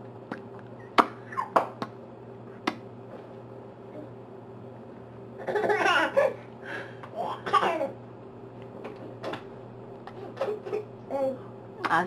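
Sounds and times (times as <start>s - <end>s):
baby laughing and giggling: 5.4s - 6.4s.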